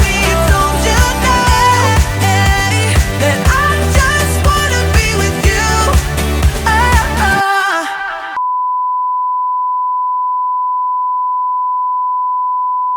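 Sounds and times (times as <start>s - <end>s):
pop song with singing: 0.0s - 8.4s.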